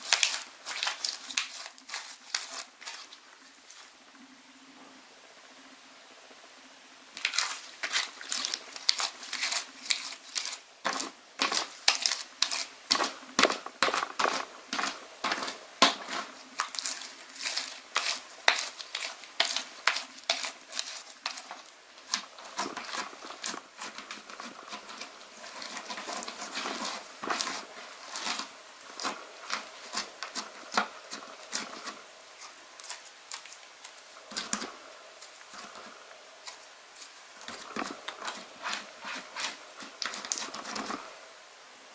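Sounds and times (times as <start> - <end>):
slime popping and crackling: 0.0 - 3.8, 7.2 - 32.0.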